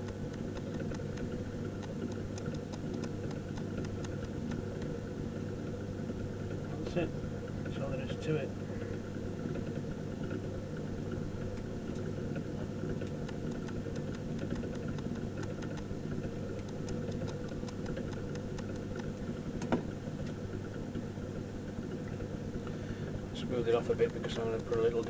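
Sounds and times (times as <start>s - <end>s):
potter's wheel humming: 0.0s - 25.0s
light ticks: 24.0s - 25.0s.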